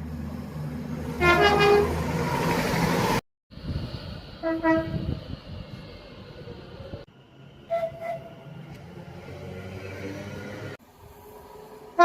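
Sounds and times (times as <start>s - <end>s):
train horn blasts: 1.2s - 2.0s, 4.4s - 5.1s, 7.6s - 8.3s.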